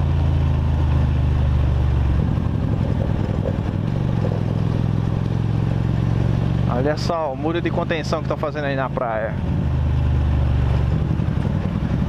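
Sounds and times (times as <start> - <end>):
motorcycle engine running: 0.0 - 12.0.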